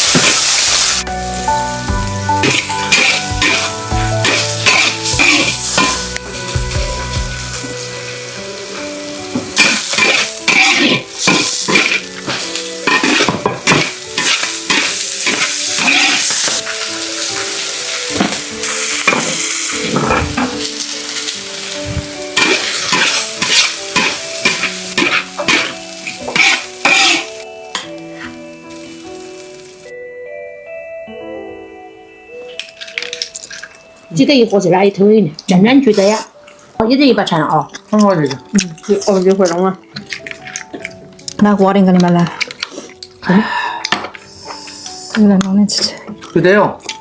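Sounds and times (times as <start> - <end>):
food sizzling in a pan: 0.0 - 29.9
spatula scraping a pan: 2.4 - 6.1, 9.6 - 17.6, 22.4 - 27.4.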